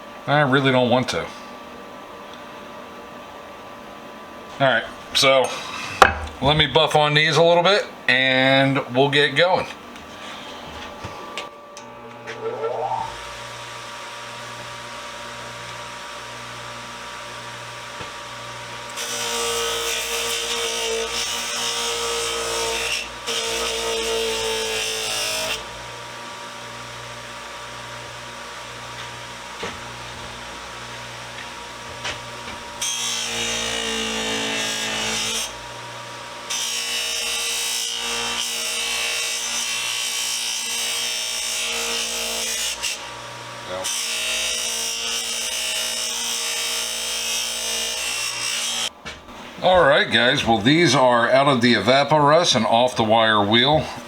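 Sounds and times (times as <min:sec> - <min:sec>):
bench buffer whining and humming: 0:00.0 - 0:22.3, 0:25.5 - 0:36.7.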